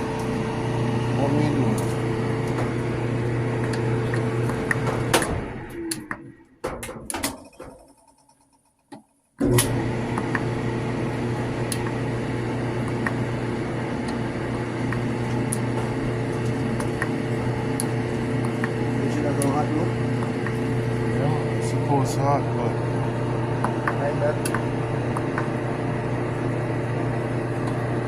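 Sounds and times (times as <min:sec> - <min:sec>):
clothes dryer humming: 0:00.0 - 0:08.0, 0:09.4 - 0:28.0
dryer clicking off: 0:00.0 - 0:08.0, 0:09.4 - 0:28.0
knocks of dryer winding down: 0:02.0 - 0:08.0.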